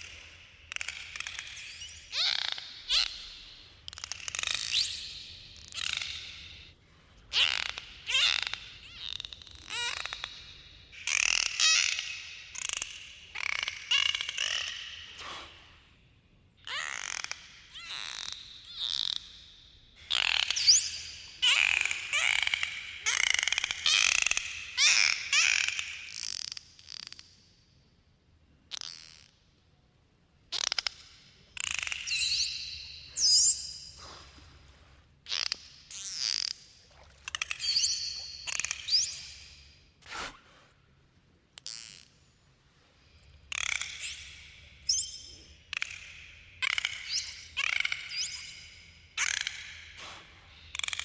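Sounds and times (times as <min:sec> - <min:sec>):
dolphin pulsed squawks: 0:00.7 - 0:03.6, 0:07.3 - 0:15.4, 0:20.0 - 0:25.7.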